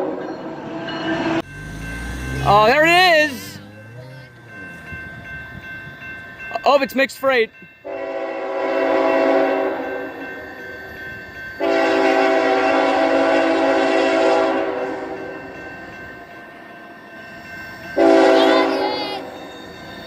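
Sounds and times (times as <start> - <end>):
locomotive air horn blasts: 7.9 - 10.1, 11.6 - 15.2, 18.0 - 18.9.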